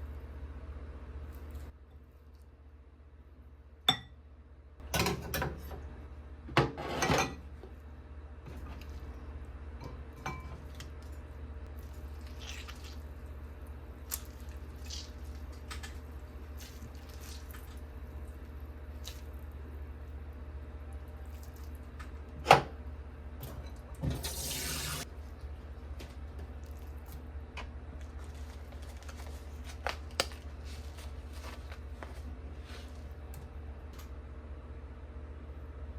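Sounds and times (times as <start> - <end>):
steady low hum: 0.0 - 24.2.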